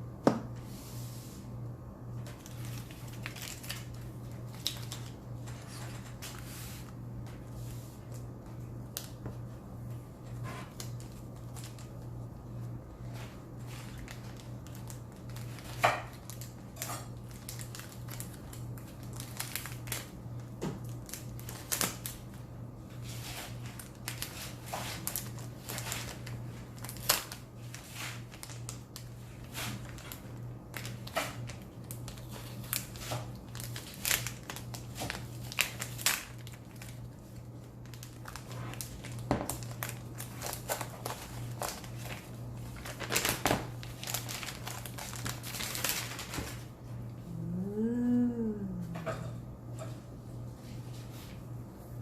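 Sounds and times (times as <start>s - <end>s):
steady low hum: 0.0s - 52.0s
packaging crinkling: 2.2s - 7.5s, 10.7s - 12.3s, 13.1s - 22.4s, 23.2s - 46.7s.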